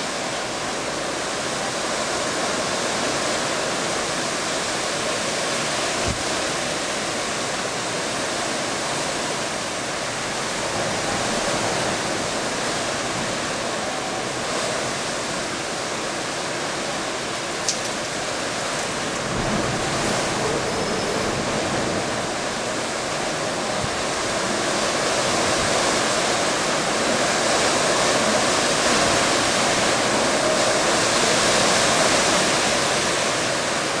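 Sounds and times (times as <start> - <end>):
storm wind rushing: 17.4 - 33.7.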